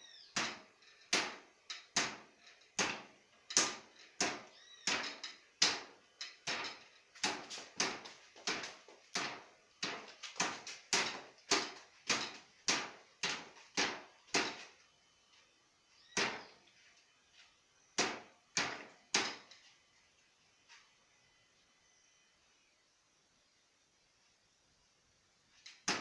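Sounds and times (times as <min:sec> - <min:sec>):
punches smacking plastic bottles: 0:00.3 - 0:14.7, 0:18.0 - 0:19.4, 0:25.7 - 0:26.0.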